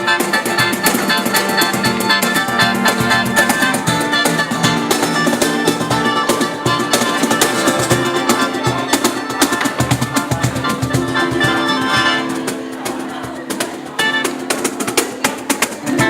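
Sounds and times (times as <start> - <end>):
drums keeping a steady beat: 0.0 - 16.0
live band playing: 0.0 - 16.0
plucked strings: 0.0 - 16.0.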